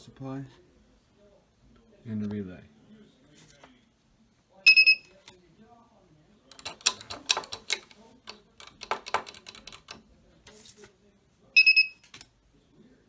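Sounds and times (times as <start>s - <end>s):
keypad buttons clicking: 6.5s - 10.0s.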